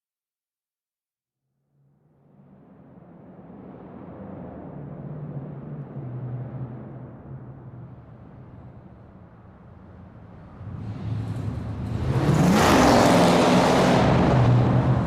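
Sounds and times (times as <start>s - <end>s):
car engine idling and revving: 4.8s - 15.0s.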